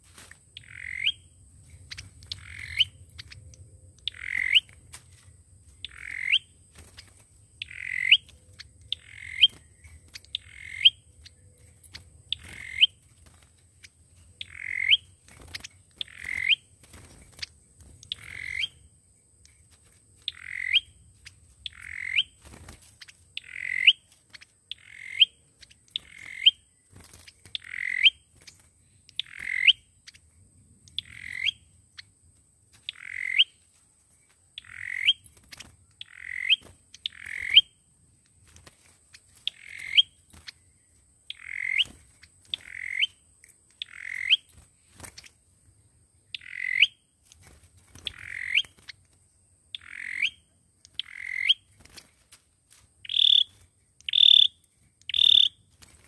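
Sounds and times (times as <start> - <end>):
songbird upward sweeping call: 53.1 - 53.5, 54.1 - 54.5, 55.1 - 55.6.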